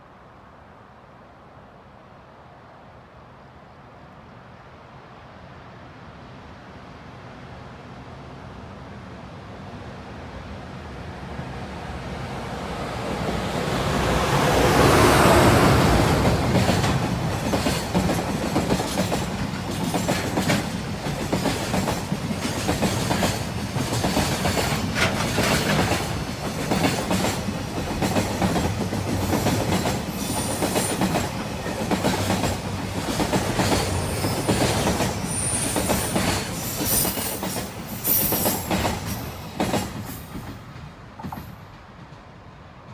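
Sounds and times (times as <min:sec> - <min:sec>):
electric locomotive passing: 0:08.3 - 0:42.9
wagon wheels clattering over rail joints: 0:16.0 - 0:41.6
high wheel squeals: 0:29.2 - 0:31.6, 0:33.1 - 0:40.6.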